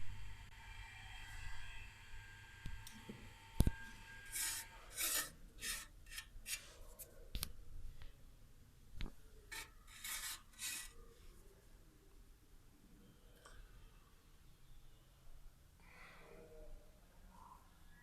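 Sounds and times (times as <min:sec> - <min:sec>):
short rubbing strokes: 0:04.3 - 0:07.0, 0:09.5 - 0:11.0.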